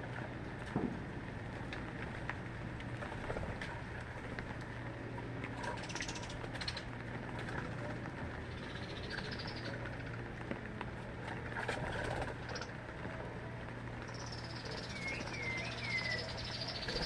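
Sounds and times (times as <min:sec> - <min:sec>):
steady low hum: 0:00.0 - 0:17.0
small birds calling: 0:05.6 - 0:07.0, 0:08.4 - 0:10.0, 0:14.0 - 0:17.0.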